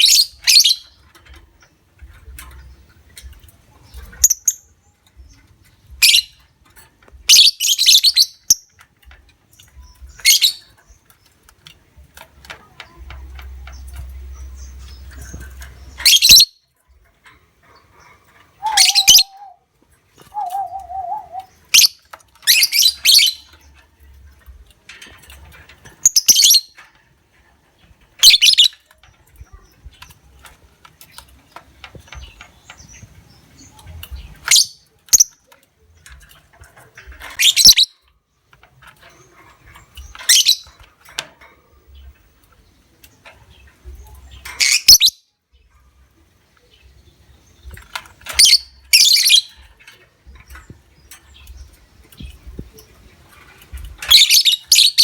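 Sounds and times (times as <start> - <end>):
lovebird chattering calls: 18.6 - 19.6, 20.3 - 23.3.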